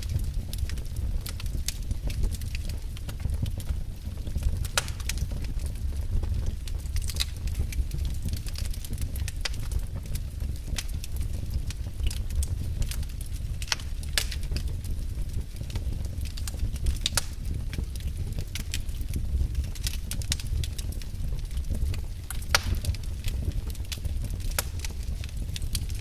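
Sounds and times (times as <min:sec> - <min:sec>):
flames rumbling: 0:00.0 - 0:26.0
logs crackling and popping: 0:00.0 - 0:26.0.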